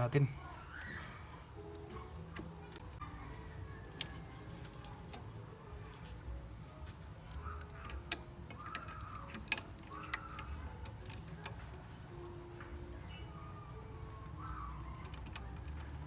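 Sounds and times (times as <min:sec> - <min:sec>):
metallic clicks of tools and parts: 0:07.3 - 0:16.0.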